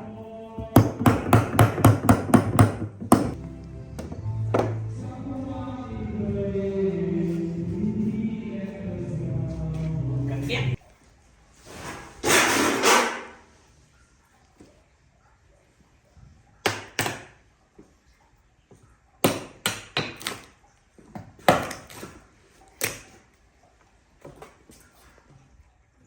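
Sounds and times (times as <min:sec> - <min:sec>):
sharp wooden knocks: 0:00.7 - 0:03.4.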